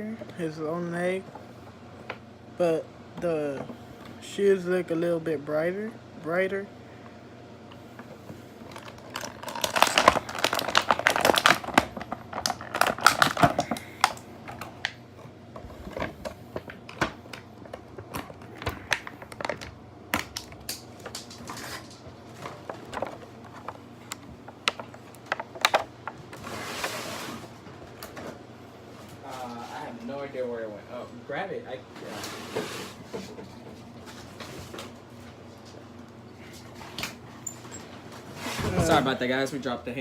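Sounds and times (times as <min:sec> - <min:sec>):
packaging rustle: 0:08.7 - 0:15.0
plastic packaging clicks and crackles: 0:08.7 - 0:15.0, 0:15.9 - 0:26.2.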